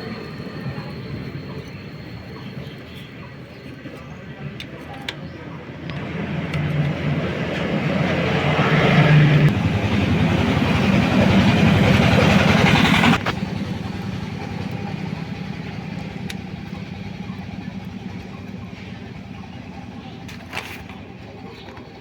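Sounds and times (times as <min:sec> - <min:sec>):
motorcycle engine revving: 0:05.9 - 0:22.0.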